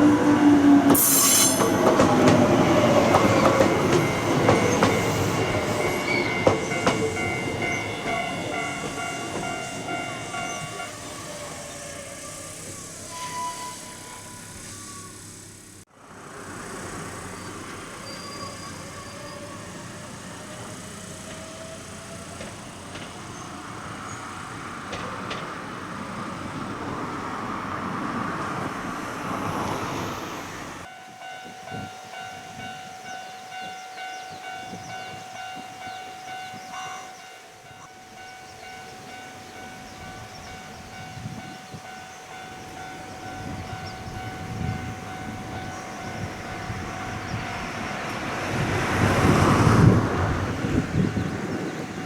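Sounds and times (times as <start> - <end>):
steady high tone: 0.0 - 12.4
train wheel and rail noise: 0.0 - 52.0.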